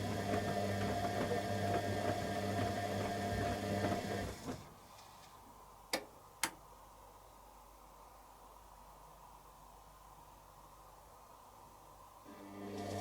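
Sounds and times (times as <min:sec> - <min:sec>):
washing machine motor running: 0:00.0 - 0:04.7, 0:12.3 - 0:13.0.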